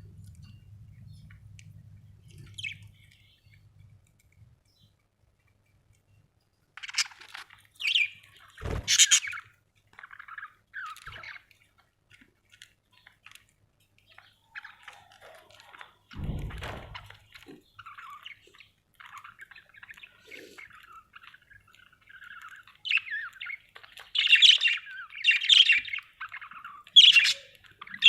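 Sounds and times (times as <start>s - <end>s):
budgerigars chirping: 6.8s - 11.5s, 17.8s - 28.0s
low thuds: 16.2s - 17.1s.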